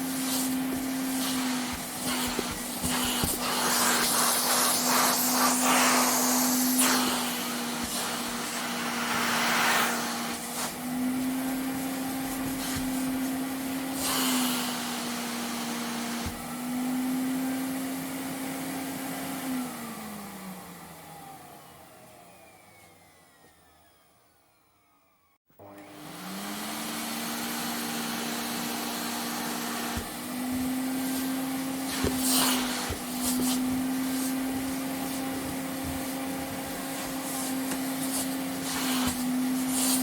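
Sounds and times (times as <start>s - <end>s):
vacuum cleaner running: 0.0s - 40.0s.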